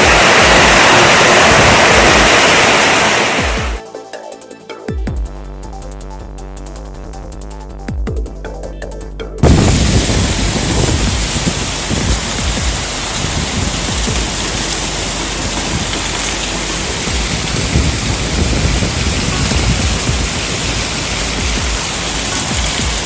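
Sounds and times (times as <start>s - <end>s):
gusting wind rumbles: 0.0s - 3.8s, 9.4s - 23.0s
heavy rain hissing: 0.0s - 3.8s, 9.4s - 23.0s.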